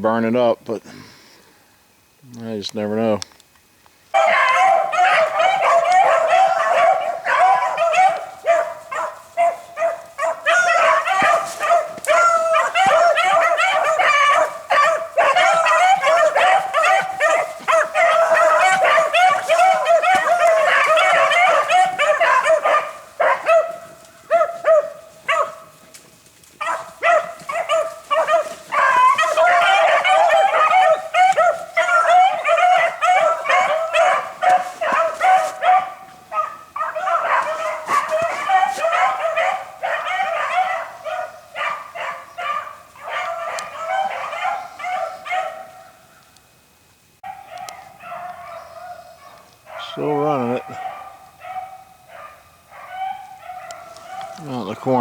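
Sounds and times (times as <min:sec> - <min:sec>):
beagles baying: 0:04.1 - 0:46.5, 0:47.2 - 0:55.0.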